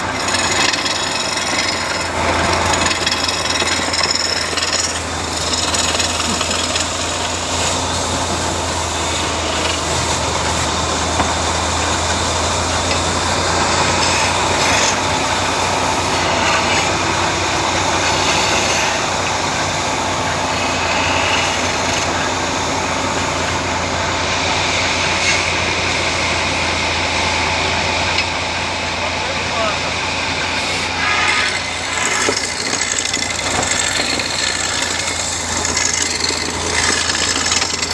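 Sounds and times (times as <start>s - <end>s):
woodworking machine whirring: 0.0s - 37.9s.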